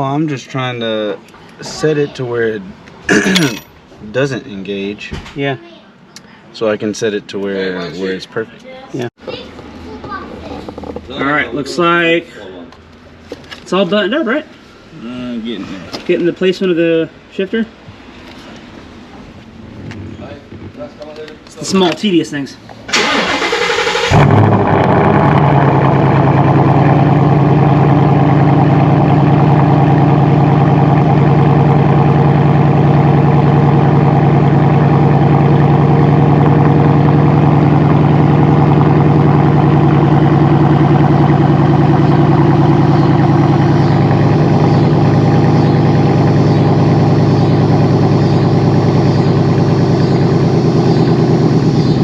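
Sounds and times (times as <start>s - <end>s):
car engine idling: 9.4s - 12.3s, 22.8s - 52.0s.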